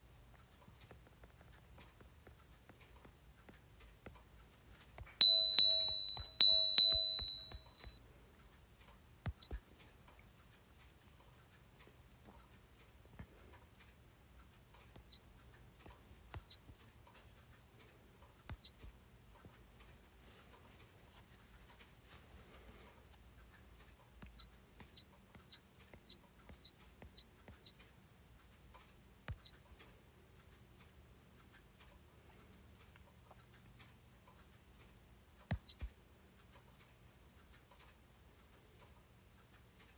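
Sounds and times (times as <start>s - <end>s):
high chirp: 5.2s - 7.9s
watch beeping: 5.2s - 7.9s.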